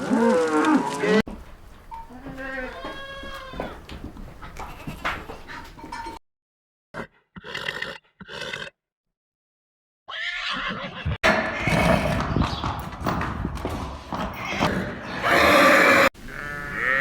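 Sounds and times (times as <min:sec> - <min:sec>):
horse whinnying: 0:10.1 - 0:12.4, 0:14.3 - 0:17.0.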